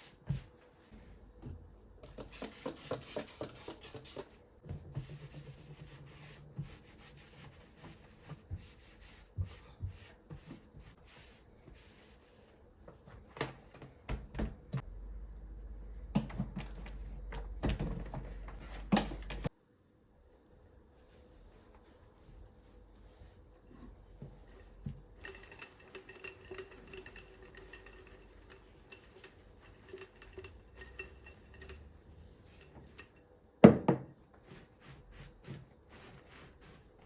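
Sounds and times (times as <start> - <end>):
low steady hum: 14.3 - 19.5.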